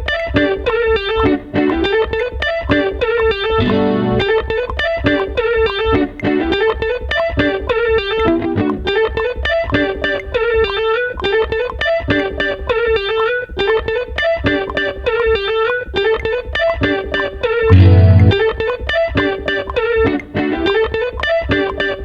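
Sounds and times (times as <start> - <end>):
instrumental beat with bass: 1.2 - 12.8, 17.7 - 19.8.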